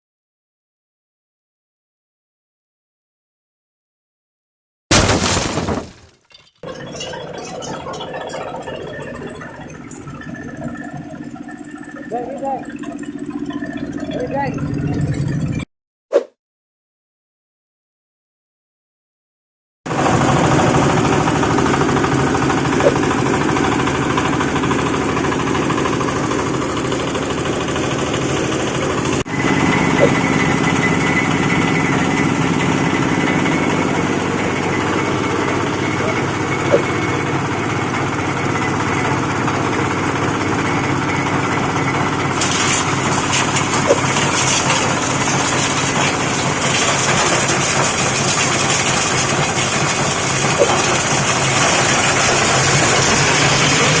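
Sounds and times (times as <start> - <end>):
diesel engine running: 6.7 - 15.6, 19.9 - 54.0
grinding machine hissing: 41.2 - 54.0.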